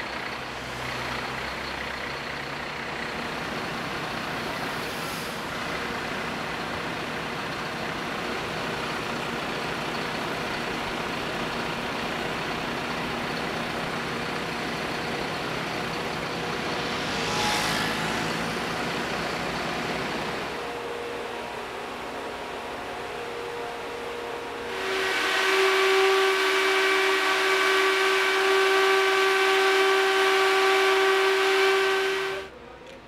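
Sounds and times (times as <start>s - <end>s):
diesel engines running: 0.0s - 33.0s
loud air hiss: 4.7s - 5.7s, 24.7s - 32.5s.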